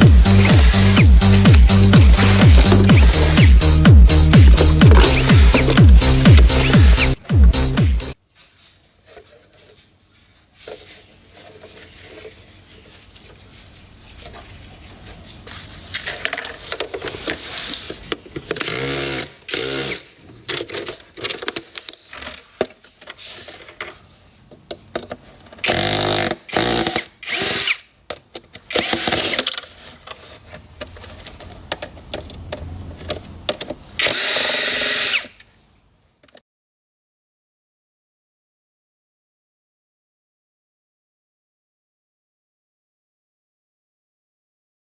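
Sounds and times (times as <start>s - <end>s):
power tool motor whine: 34.0s - 35.3s.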